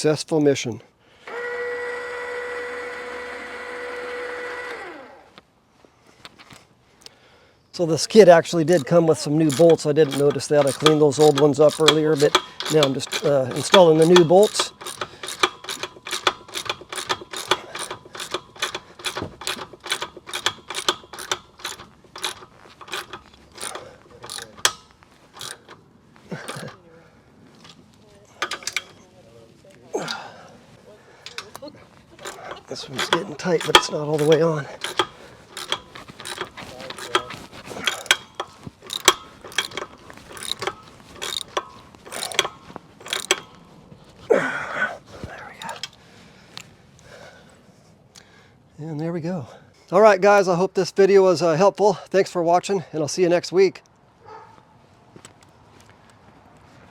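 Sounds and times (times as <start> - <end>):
socket ratchet clicking: 8.1 - 26.8, 28.4 - 29.0, 31.3 - 31.6, 32.2 - 43.6.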